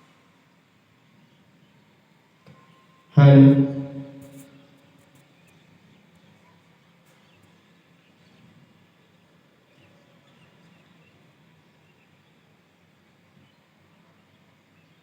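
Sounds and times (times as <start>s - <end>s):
low hum: 3.2s - 4.4s.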